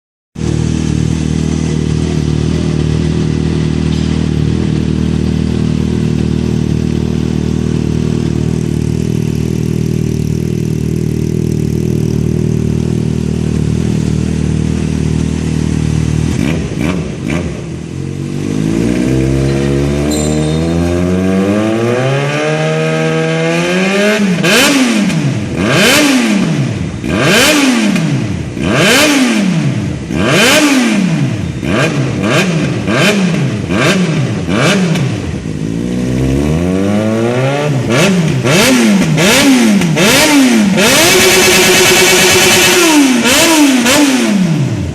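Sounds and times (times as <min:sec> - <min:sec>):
motorcycle engine idling: 0:00.4 - 0:21.7
engine revving: 0:00.4 - 0:44.9.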